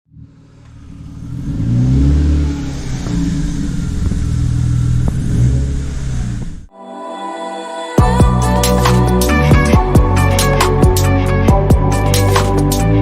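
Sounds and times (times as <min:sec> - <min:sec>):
car engine revving hard: 0:00.1 - 0:06.7.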